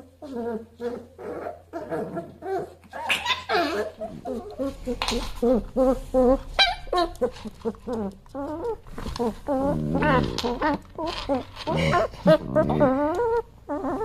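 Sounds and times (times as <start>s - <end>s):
pet animal squealing: 3.0s - 14.0s.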